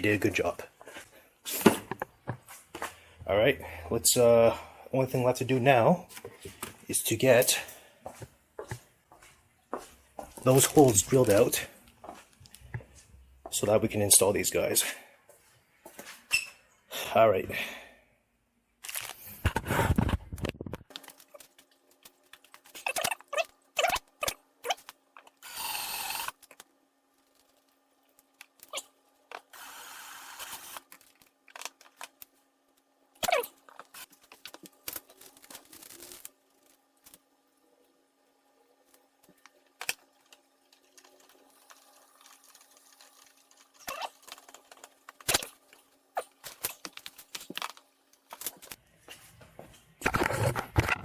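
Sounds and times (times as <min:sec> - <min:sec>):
power drill whine: 0:25.4 - 0:26.4, 0:29.6 - 0:30.8.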